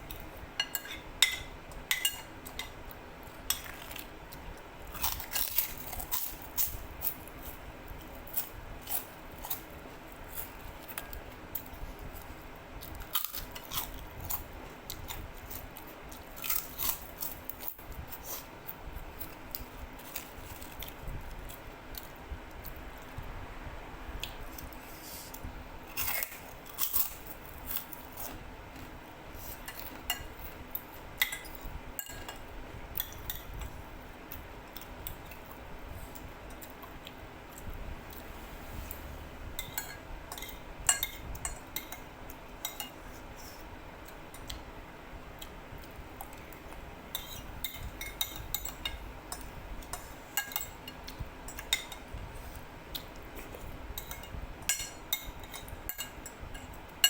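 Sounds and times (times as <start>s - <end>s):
cutlery clinking against a bowl: 0.1s - 4.1s, 29.5s - 33.5s, 39.6s - 43.0s, 47.1s - 52.1s, 53.0s - 57.0s.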